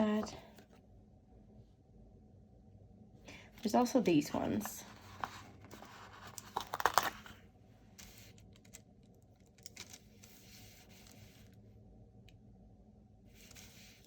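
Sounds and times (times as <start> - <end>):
sticker sheets crinkling: 4.4 - 7.4, 9.4 - 11.5.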